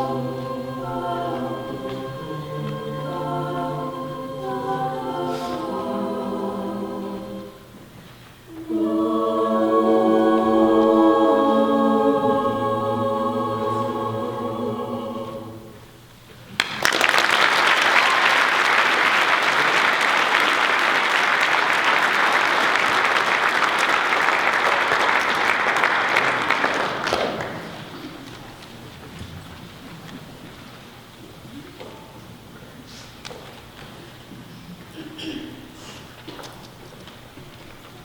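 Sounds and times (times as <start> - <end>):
choir holding a chord: 0.0 - 7.8, 8.5 - 16.0, 17.8 - 28.4
audience applauding: 16.5 - 28.8.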